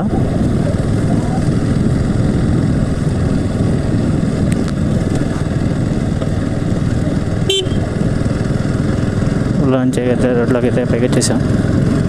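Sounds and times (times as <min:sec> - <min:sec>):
motorcycle engine: 0:00.0 - 0:12.0
motorcycle horn toot: 0:07.4 - 0:07.9.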